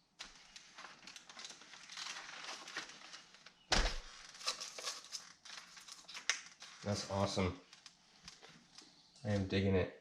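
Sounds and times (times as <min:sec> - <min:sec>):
rustling: 0:00.1 - 0:09.1
solid thump: 0:03.7 - 0:04.1.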